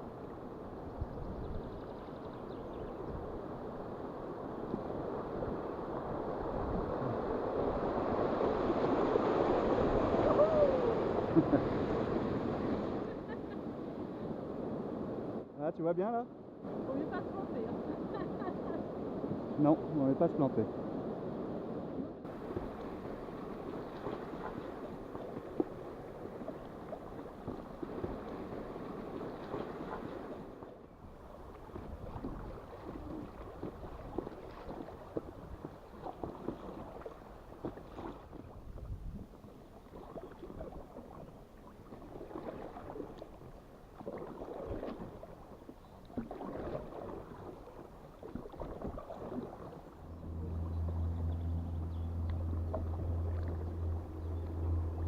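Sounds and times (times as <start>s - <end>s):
river water splashing around canoe: 0.0s - 15.4s, 22.2s - 55.0s
steady low hum: 49.9s - 55.0s.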